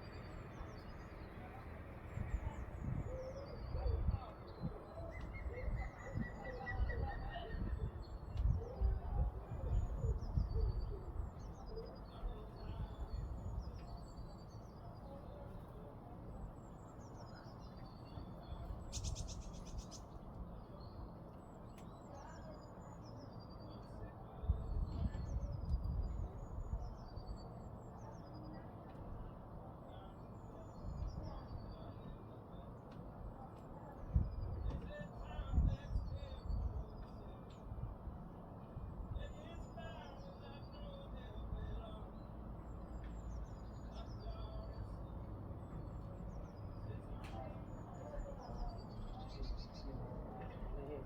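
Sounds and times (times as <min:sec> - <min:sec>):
songbirds chirping: 0:00.0 - 0:51.0
bird trill: 0:18.8 - 0:20.2.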